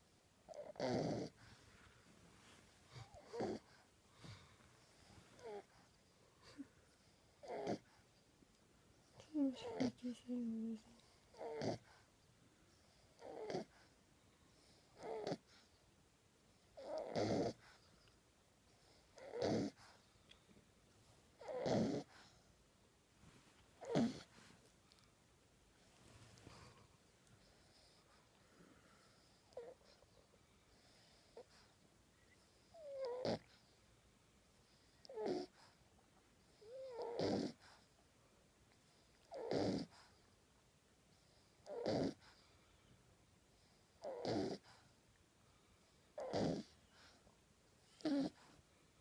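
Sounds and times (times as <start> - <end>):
puppy snoring with squeaky whistle: 0.5 - 1.3, 7.4 - 7.9, 11.3 - 11.9, 13.2 - 13.8, 15.0 - 15.6, 16.8 - 17.8, 19.2 - 19.8, 21.4 - 22.2, 23.8 - 24.3, 32.2 - 33.6, 34.7 - 35.6, 36.6 - 37.7, 39.3 - 40.1, 41.6 - 42.4, 44.0 - 44.8, 46.2 - 47.2, 47.8 - 48.5
puppy snoring: 0.5 - 1.9, 2.5 - 8.0, 9.1 - 12.1, 12.8 - 15.7, 16.8 - 18.0, 18.7 - 20.1, 21.4 - 22.5, 23.8 - 25.1, 26.3 - 33.8, 34.6 - 35.8, 36.4 - 37.9, 38.9 - 40.3, 41.2 - 42.5, 43.5 - 45.0, 45.8 - 47.2, 47.8 - 48.6.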